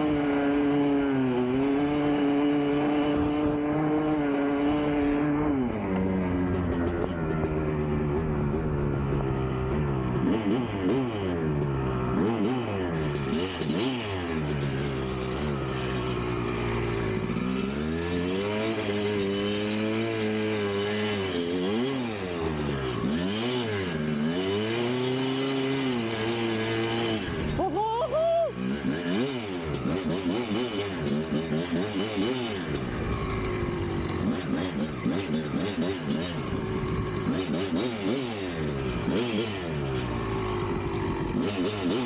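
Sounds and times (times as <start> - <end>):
dirt bike engine revving: 0.0 - 42.0.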